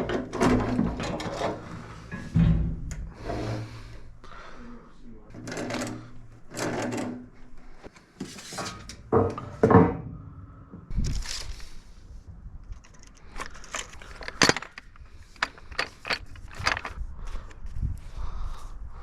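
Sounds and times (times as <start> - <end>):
metal tools and pipe fittings clanking: 0.0 - 4.0, 5.3 - 7.3, 12.8 - 17.0.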